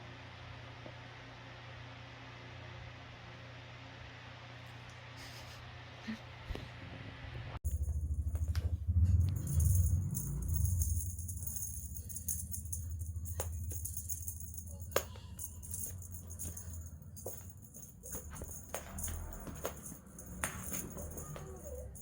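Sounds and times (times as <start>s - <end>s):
low pulsing bass: 7.6s - 22.0s
music with shaker rattle: 9.2s - 22.0s.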